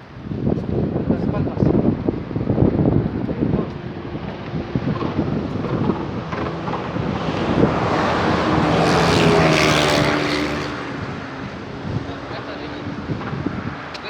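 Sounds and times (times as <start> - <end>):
wind rumble on microphone: 0.0 - 14.0
vehicle passing by: 3.4 - 13.9.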